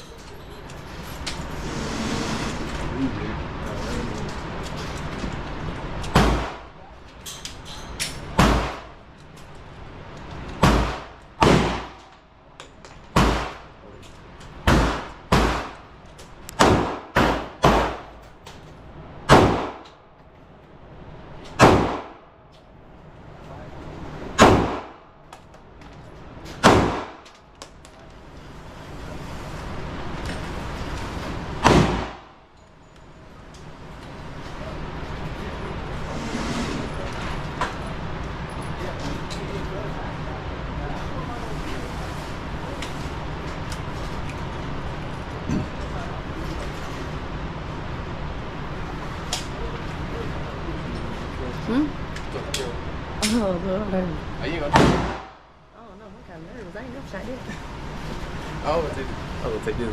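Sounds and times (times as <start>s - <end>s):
echoing gunshots: 10.6s - 12.0s, 14.7s - 15.8s, 16.6s - 18.1s, 19.3s - 19.8s, 21.6s - 22.2s, 24.4s - 25.0s, 26.6s - 27.2s, 31.6s - 32.3s, 54.7s - 55.4s.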